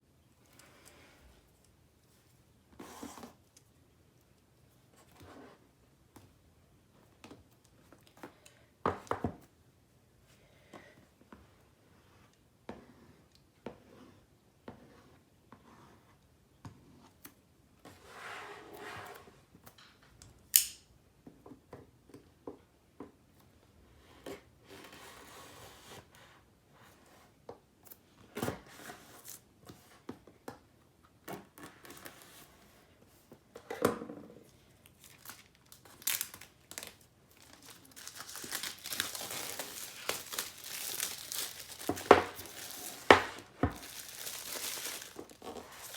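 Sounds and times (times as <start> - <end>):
wrapping crinkling: 34.7 - 45.9
tearing and rustling: 34.9 - 45.9.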